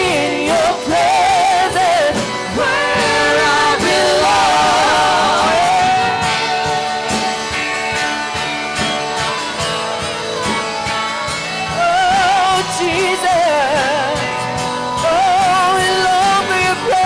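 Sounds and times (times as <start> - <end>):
person singing: 0.0 - 7.5, 11.6 - 17.0
worship band playing: 0.0 - 17.0.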